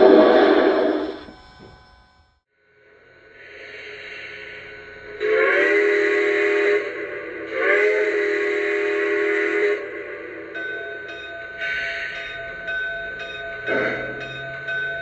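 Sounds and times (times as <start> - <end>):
steam whistle blasts: 5.2 - 9.9.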